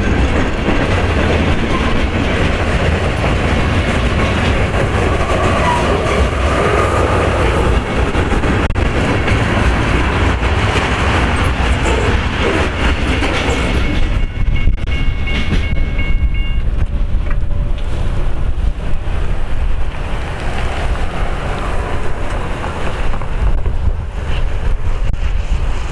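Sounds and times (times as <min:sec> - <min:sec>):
wheel clatter over rail joints: 0:00.0 - 0:25.2
freight train rumbling past: 0:00.0 - 0:25.9
high wheel squeal: 0:01.5 - 0:08.7, 0:19.3 - 0:23.6.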